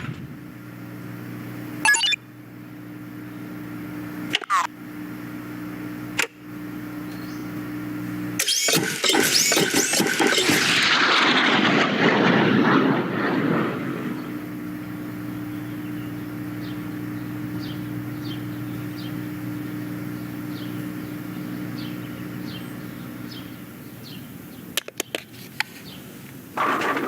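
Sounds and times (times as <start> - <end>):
steady low hum: 0.0 - 27.0
high falling chirps: 1.8 - 2.2
sharp clicks: 8.4 - 10.7
loud rushing noise: 10.5 - 14.4.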